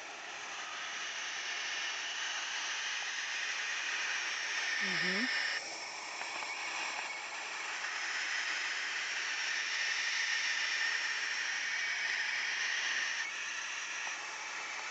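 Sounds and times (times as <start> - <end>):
owls hissing: 4.7 - 5.6.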